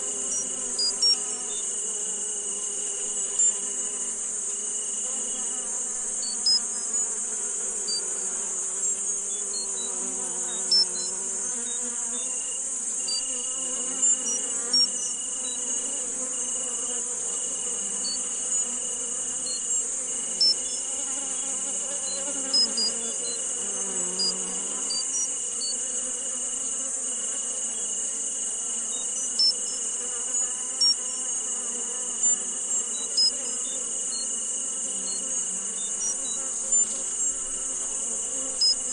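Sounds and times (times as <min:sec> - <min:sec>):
insects hissing: 0:00.0 - 0:38.9
insect high trill: 0:32.2 - 0:38.9.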